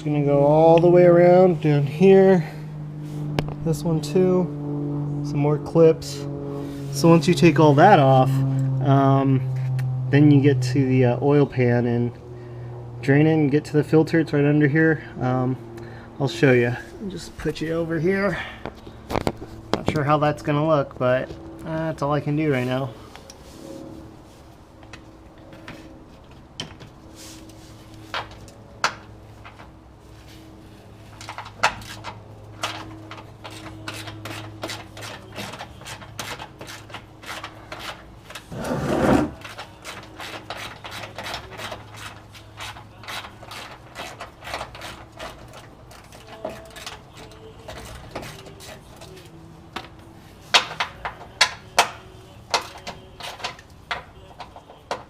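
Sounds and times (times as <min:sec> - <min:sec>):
rubbing on plastic: 0:32.7 - 0:49.4.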